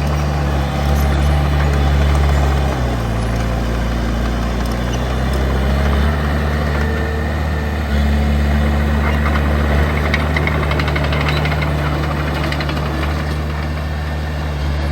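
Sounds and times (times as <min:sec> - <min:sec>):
diesel engine running: 0:00.0 - 0:14.9
rapid metallic clatter: 0:09.1 - 0:14.2.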